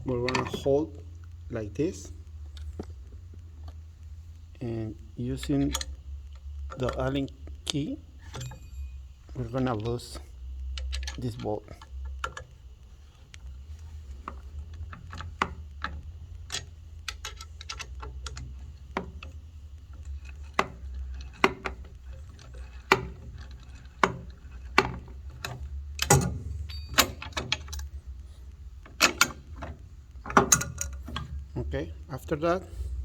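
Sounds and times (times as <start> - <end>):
low steady hum: 0.0 - 33.0
metallic clicks and taps of tools: 20.0 - 28.0, 28.8 - 31.4.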